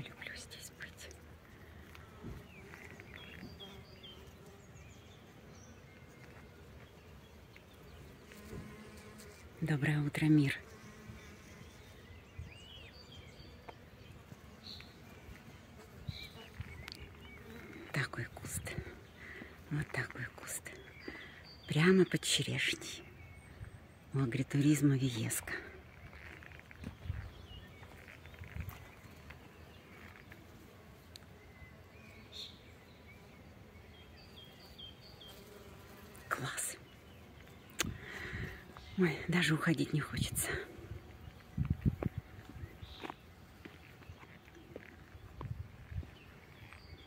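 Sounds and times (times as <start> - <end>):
soft low outdoor rumble: 0.0 - 35.2, 35.9 - 47.0
faint bird chirps: 31.4 - 47.0.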